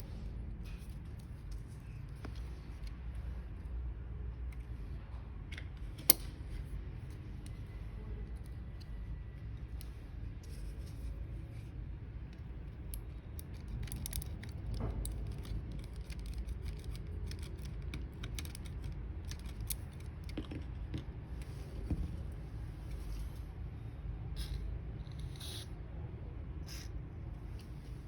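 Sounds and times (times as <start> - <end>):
steady low hum: 0.0 - 28.0
small plastic parts clicking: 12.8 - 21.1.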